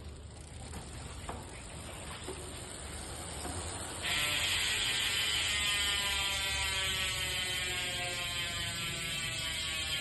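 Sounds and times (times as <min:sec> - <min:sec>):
rolling noise: 0:00.0 - 0:07.0
bicycle hub freewheel buzz: 0:00.0 - 0:10.0.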